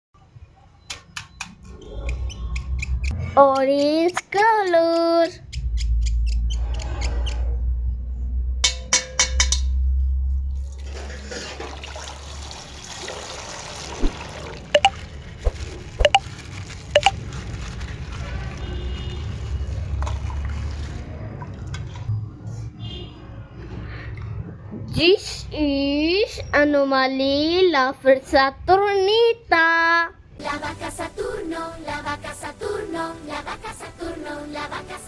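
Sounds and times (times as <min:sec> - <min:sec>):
water pouring and dribbling: 0:10.5 - 0:22.1
plastic crinkling: 0:14.9 - 0:20.8.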